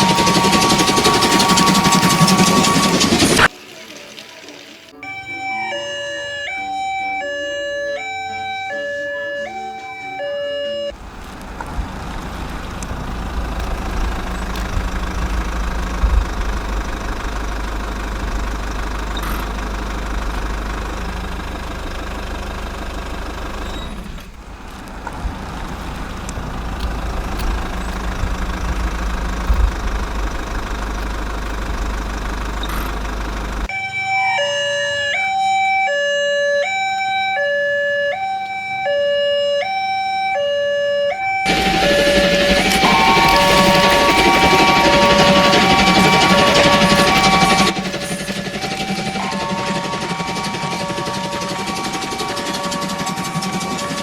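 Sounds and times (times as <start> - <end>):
two-tone emergency siren: 0.0 - 54.0
dense rumbling with deep bass: 10.9 - 33.7.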